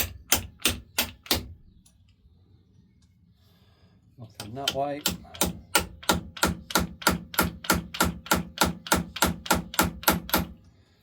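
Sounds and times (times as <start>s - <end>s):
hammer tapping metal punch: 0.0s - 1.6s, 4.4s - 10.6s.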